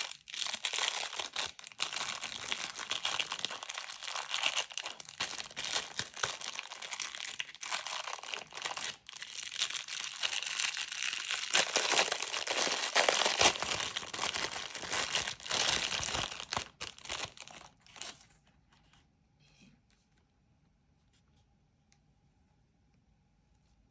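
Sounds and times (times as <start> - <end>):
packaging tearing: 0.0 - 18.2
packaging crinkling: 0.0 - 18.3.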